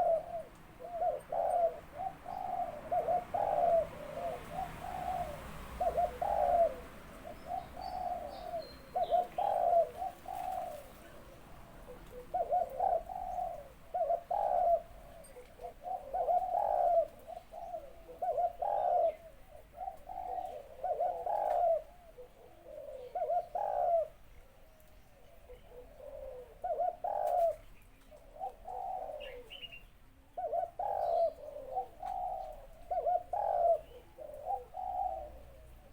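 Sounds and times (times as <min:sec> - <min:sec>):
dove cooing: 0:00.0 - 0:35.9.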